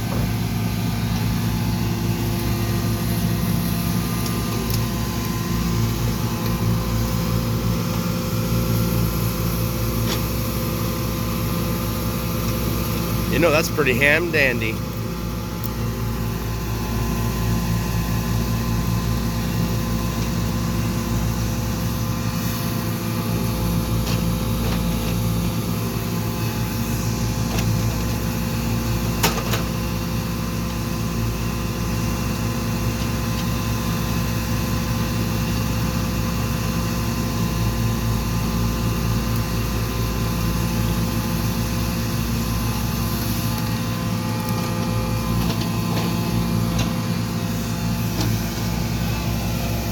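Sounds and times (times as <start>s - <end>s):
excavator diesel engine running: 0.0s - 17.8s.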